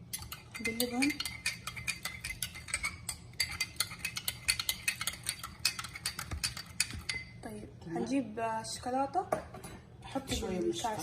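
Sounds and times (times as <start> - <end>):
spoon clinking in glass: 0.1 - 7.4.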